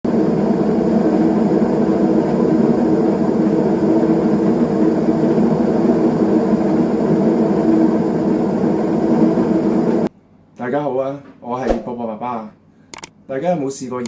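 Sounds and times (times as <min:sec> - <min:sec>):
washing machine droning: 0:00.0 - 0:10.1.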